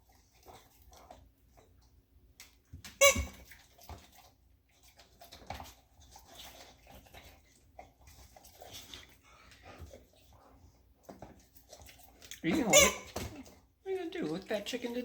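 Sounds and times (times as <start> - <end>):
squeaky toy squeak: 3.0 - 3.4, 12.5 - 13.3.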